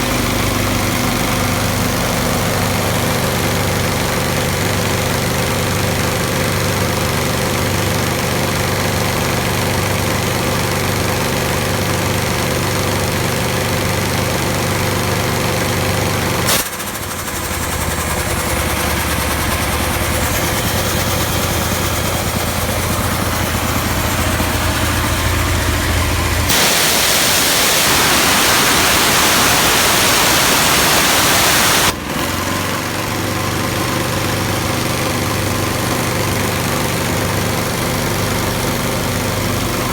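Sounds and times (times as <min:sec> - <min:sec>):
air compressor running: 0:00.0 - 0:39.9
loud air hiss: 0:26.5 - 0:32.0.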